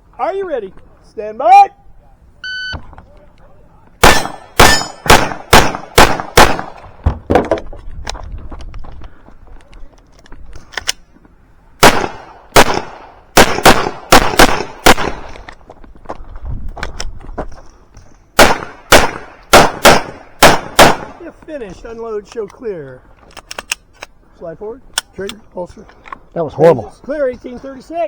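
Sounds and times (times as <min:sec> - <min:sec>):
pistol shots: 0:04.0 - 0:06.8, 0:11.8 - 0:15.4, 0:18.4 - 0:21.2.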